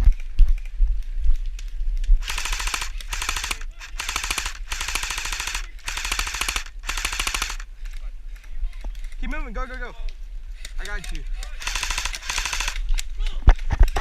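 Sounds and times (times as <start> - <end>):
airsoft gun full-auto bursts: 2.2 - 7.7, 11.6 - 13.0.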